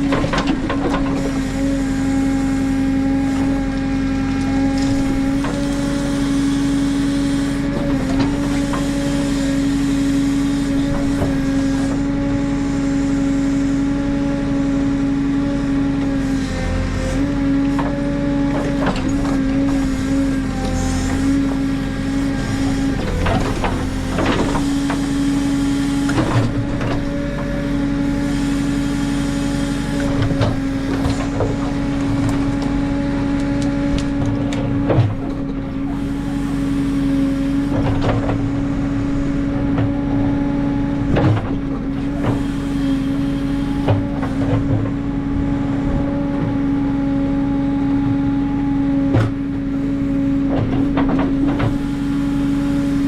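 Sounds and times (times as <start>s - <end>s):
backhoe knocks and clanks: 0.0s - 12.6s, 13.6s - 53.0s
diesel engine humming: 0.0s - 53.0s.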